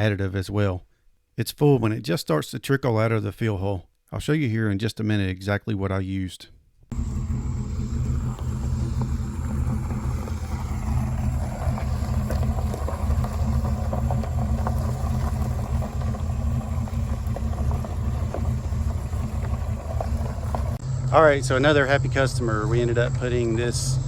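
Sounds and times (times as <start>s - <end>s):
car engine deep rumble: 6.9s - 24.0s.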